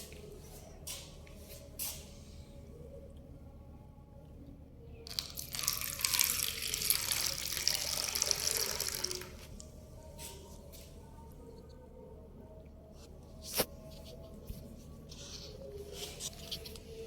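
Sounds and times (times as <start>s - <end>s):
liquid pouring: 5.1s - 9.6s.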